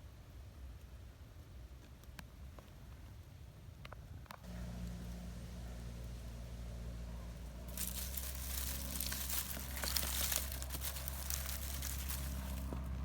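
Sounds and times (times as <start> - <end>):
steady low hum: 4.4 - 13.0
dense crackling and rustling: 7.4 - 13.0.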